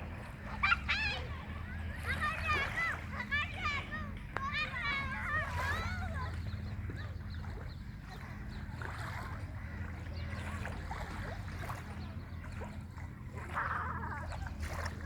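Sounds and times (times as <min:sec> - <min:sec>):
faint distant voices: 0:00.0 - 0:15.0
low engine-like hum: 0:00.0 - 0:15.0
water sounds: 0:00.0 - 0:15.0.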